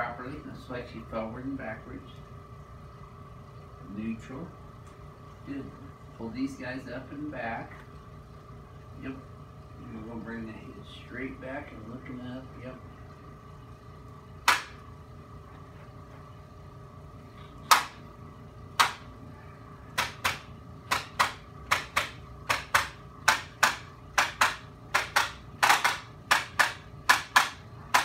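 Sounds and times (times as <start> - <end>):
sharp joint clicks: 20.0 - 28.0.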